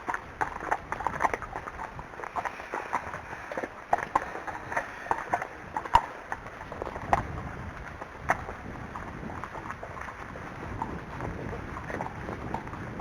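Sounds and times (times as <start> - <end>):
horse hooves clip-clopping: 0.0 - 13.0.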